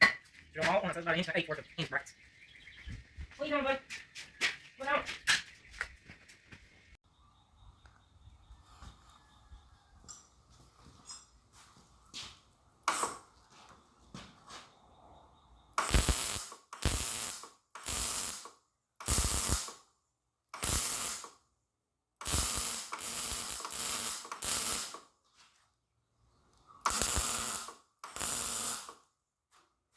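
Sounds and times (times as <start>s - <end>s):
electric arc crackling hiss: 15.8s - 18.5s, 19.1s - 19.7s, 20.6s - 21.3s, 22.2s - 25.0s, 26.9s - 29.0s.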